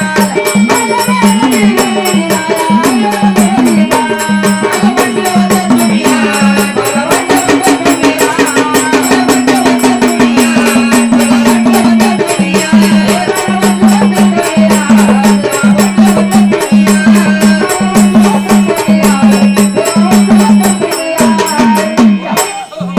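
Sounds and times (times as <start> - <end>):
jingling percussion: 0.0 - 22.9.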